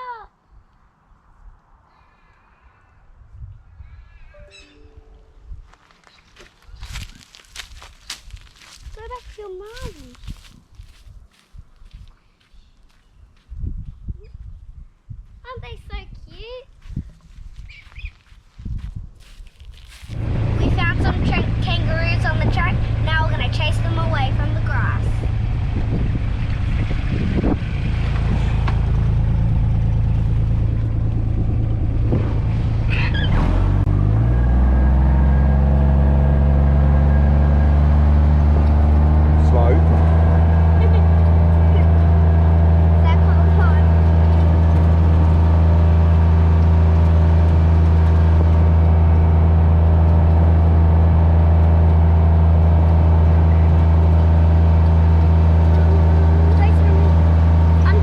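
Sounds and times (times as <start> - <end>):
vehicle engine running: 6.8 - 11.0, 19.8 - 58.0.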